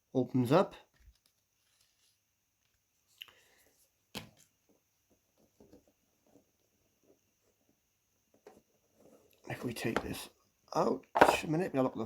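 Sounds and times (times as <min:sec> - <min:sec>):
paper rustling: 0:00.9 - 0:02.8.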